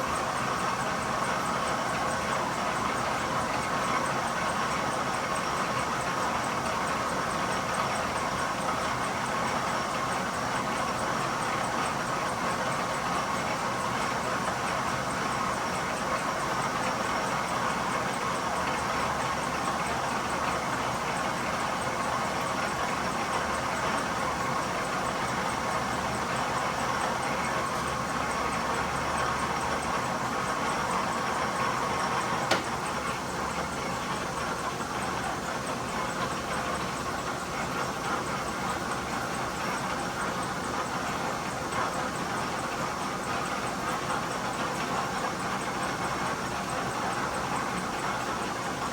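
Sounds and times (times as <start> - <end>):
sharp click: 32.5 - 32.7.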